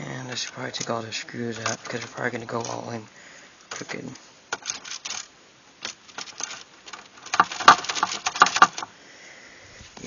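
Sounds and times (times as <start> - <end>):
keyboard parts clicking and rattling: 0.2 - 3.1, 3.7 - 8.9.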